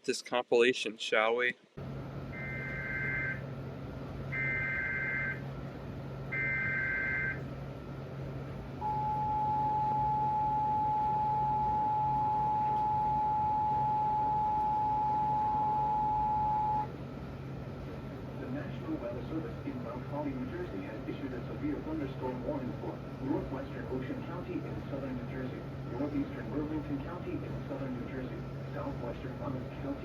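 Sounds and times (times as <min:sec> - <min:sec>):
steady low hum: 0:01.7 - 0:30.0
two-tone attention signal: 0:02.3 - 0:03.4, 0:04.3 - 0:05.4, 0:06.4 - 0:07.4, 0:08.8 - 0:16.9.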